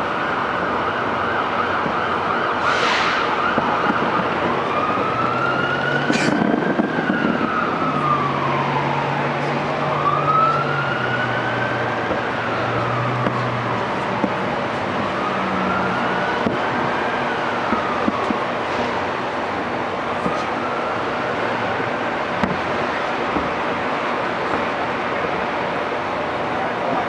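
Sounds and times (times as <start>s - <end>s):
emergency vehicle siren wailing: 0.0s - 27.0s
rushing background noise: 0.0s - 27.0s.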